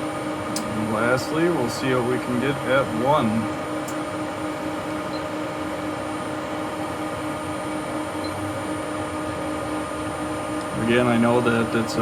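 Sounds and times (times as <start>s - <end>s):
steady electrical hum: 0.0s - 12.0s.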